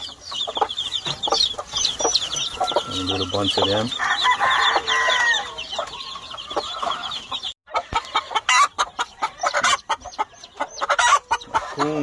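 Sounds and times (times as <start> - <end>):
chicks peeping: 0.0 - 12.0
soft clucking: 5.8 - 12.0.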